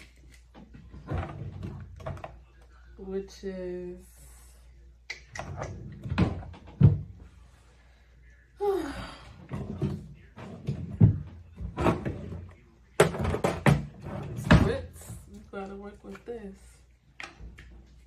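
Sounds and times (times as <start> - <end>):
objects knocking on hard surface: 13.0 - 14.7.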